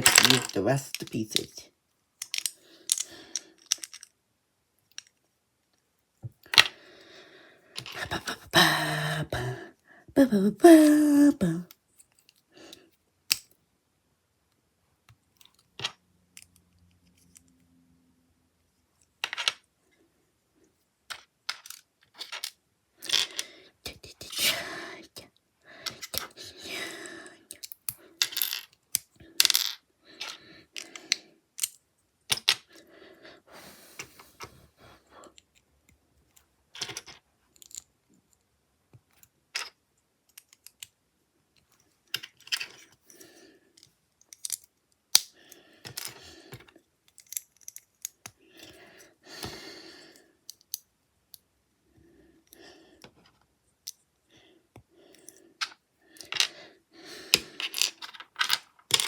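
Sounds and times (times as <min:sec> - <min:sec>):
plastic bricks clicking: 0:02.2 - 0:04.1.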